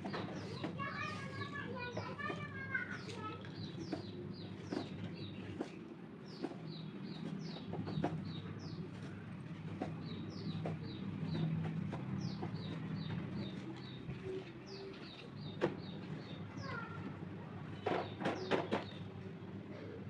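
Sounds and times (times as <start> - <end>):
birds chirping: 9.8 - 17.0.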